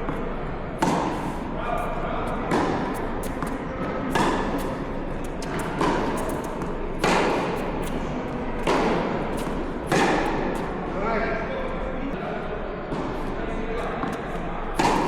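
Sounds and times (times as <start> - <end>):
tennis ball hit by rackets: 0.8 - 10.8, 14.0 - 15.0.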